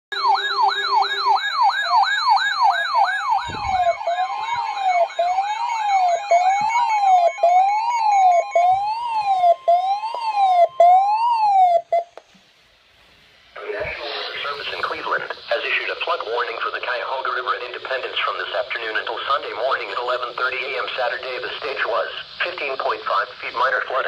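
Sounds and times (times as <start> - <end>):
electronic siren yelp and wail: 0.1 - 12.2
steady high tone: 0.1 - 12.2, 13.6 - 20.2.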